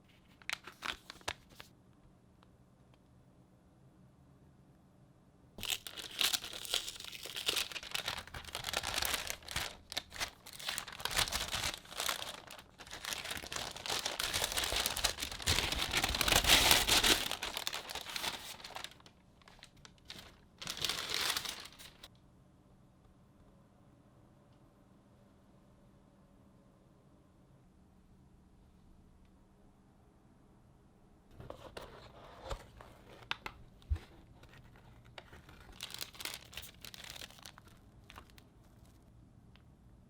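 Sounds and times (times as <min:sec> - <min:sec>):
packaging crinkling and rustling: 0:00.1 - 0:01.7, 0:05.6 - 0:22.1, 0:31.4 - 0:39.0.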